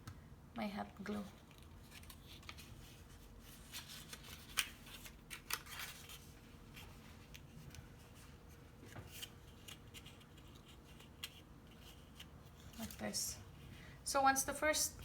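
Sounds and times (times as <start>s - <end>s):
paper rustling and clicking: 3.6s - 7.8s.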